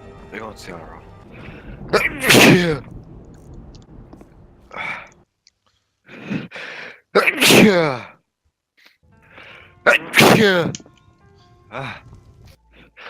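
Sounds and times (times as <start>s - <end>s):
person sneezing: 2.0s - 2.6s, 7.2s - 8.2s, 9.9s - 10.8s.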